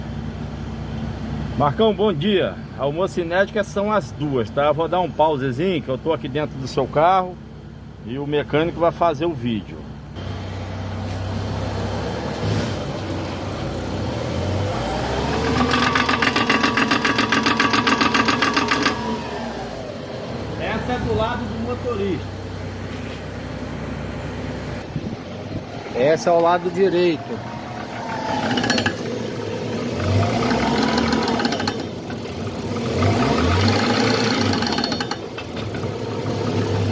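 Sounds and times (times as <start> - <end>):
car engine running: 9.6 - 36.9
fast clicking from car wheels: 15.1 - 19.3, 27.5 - 36.9.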